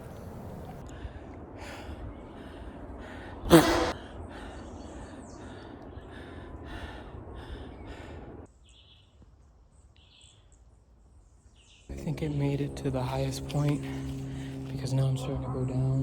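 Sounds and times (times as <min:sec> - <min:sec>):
person panting heavily: 0:00.8 - 0:08.5, 0:13.8 - 0:14.7
loud voiced gasp: 0:03.0 - 0:06.8.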